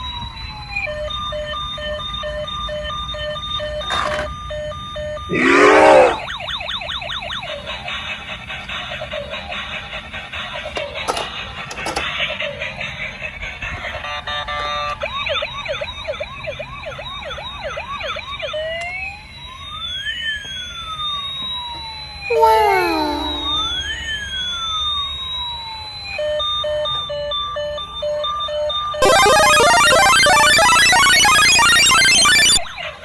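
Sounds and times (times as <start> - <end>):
toy siren sound effect: 5.1 - 7.9, 22.3 - 24.5, 29.0 - 33.0
pulsing electronic beep: 29.0 - 32.8.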